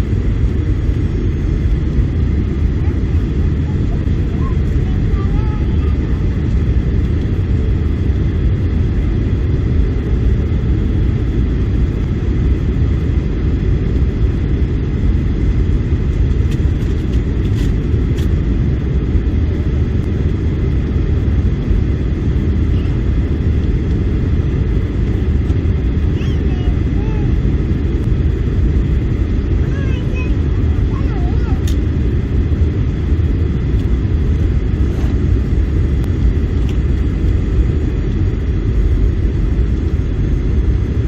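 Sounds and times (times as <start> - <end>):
airplane engines rumbling: 0.0 - 41.0
rushing air: 32.3 - 40.3.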